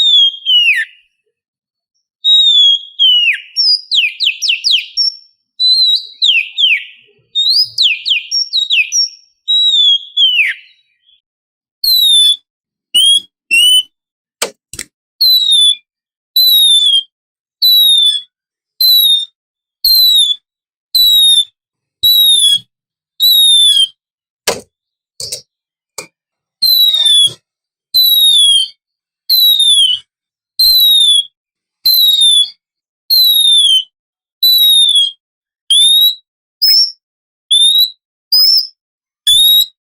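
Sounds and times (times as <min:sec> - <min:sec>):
magpie-robin whistled song: 0:00.0 - 0:01.4, 0:02.0 - 0:11.2, 0:11.8 - 0:14.0, 0:15.2 - 0:24.0, 0:26.6 - 0:39.8
sharp clicks: 0:14.4 - 0:15.0, 0:25.2 - 0:25.4.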